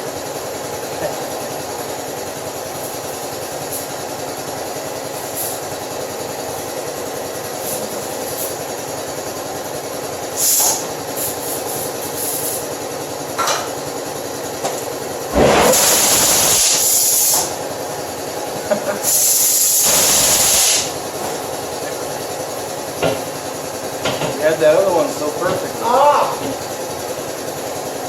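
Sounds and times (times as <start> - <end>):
compressed air hisses: 10.3 - 12.6, 15.6 - 17.6, 19.0 - 21.2.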